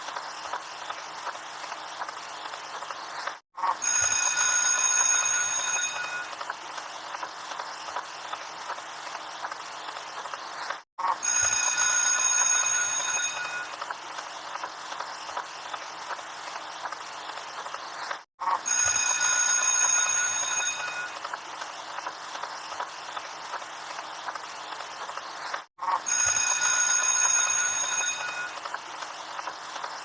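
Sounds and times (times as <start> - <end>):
high metallic ringing tone: 3.8 - 6.4, 11.2 - 13.8, 18.7 - 21.3, 26.1 - 28.7.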